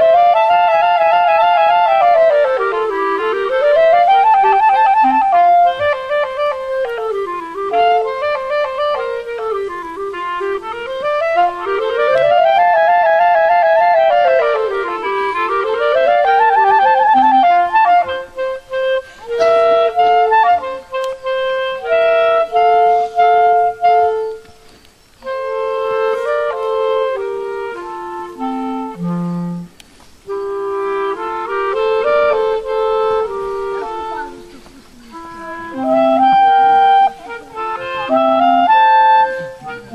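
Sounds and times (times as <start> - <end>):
reedy woodwind melody: 0.0 - 39.9.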